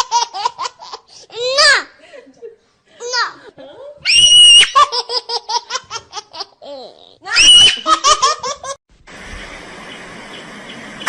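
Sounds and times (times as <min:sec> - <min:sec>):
high-pitched laughter: 0:07.2 - 0:08.8
steady hiss: 0:08.9 - 0:11.0.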